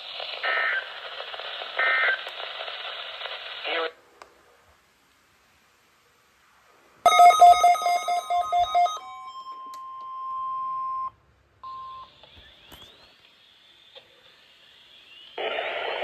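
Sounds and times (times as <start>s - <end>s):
faint radio hiss: 0.0s - 7.1s, 11.2s - 16.0s
steady warning alarm tone: 7.1s - 12.2s.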